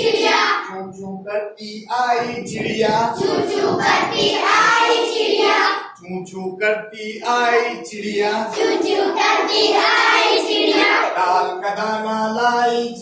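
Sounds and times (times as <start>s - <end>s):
group singing in unison: 0.0s - 0.7s, 2.2s - 6.2s, 7.0s - 12.3s.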